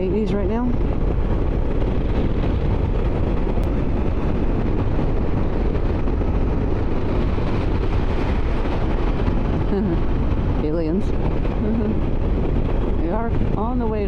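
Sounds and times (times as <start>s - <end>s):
road noise: 0.0s - 14.0s
wind rushing over microphone: 0.0s - 14.0s.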